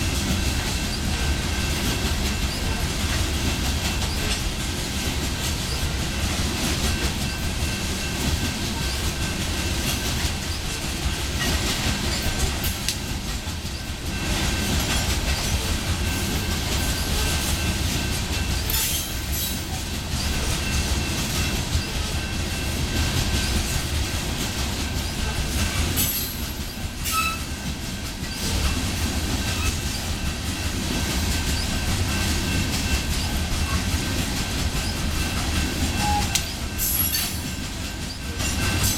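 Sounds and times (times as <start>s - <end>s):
clickety-clack of wheels on rails: 0.0s - 38.9s
freight train rumbling past: 0.0s - 38.9s
high wheel squeal: 27.0s - 27.5s.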